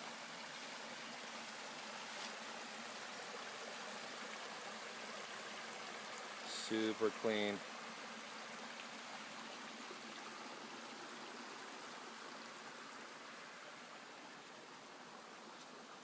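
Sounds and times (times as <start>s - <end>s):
small waterfall rushing: 0.0s - 16.0s.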